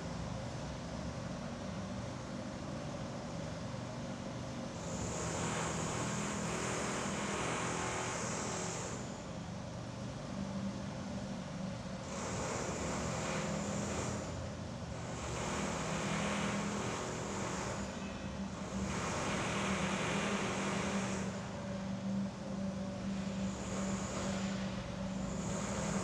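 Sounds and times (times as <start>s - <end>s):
low machine hum: 8.5s - 26.0s.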